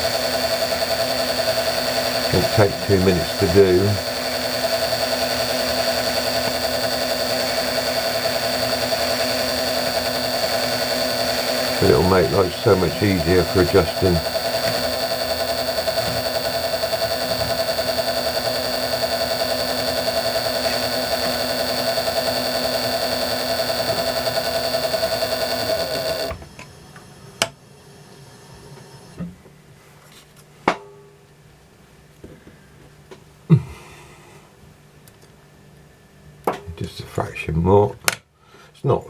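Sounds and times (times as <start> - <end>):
lathe motor hum and whine: 0.0 - 26.4.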